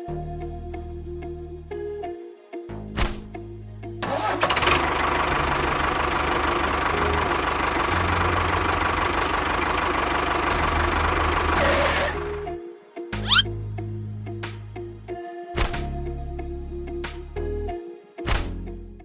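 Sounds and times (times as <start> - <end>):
engine running with fast rattle: 4.0 - 12.5.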